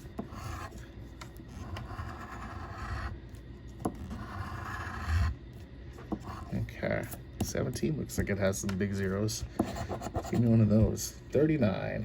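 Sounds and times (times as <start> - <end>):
lottery ticket being scratched: 4.0 - 5.3.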